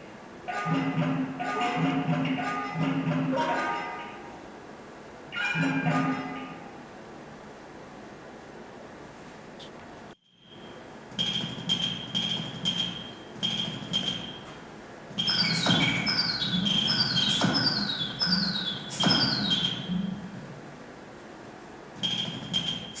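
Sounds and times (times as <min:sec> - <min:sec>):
electronic beeper short high beeps: 0:15.2 - 0:19.9.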